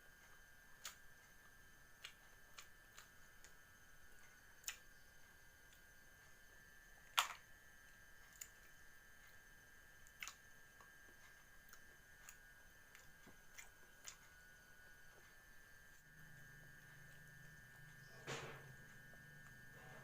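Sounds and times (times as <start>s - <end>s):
faint high-pitched hum: 0.0s - 20.0s
person eating with crunches: 10.0s - 14.4s.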